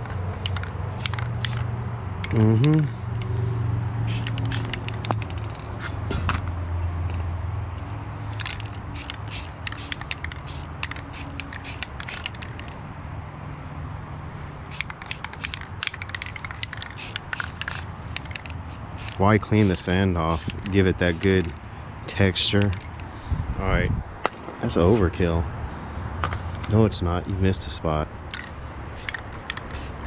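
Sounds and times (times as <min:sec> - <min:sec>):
aerosol spray can hissing: 0:01.0 - 0:01.6, 0:04.1 - 0:05.0, 0:08.9 - 0:12.4, 0:14.7 - 0:16.0, 0:16.6 - 0:21.3, 0:29.0 - 0:30.0.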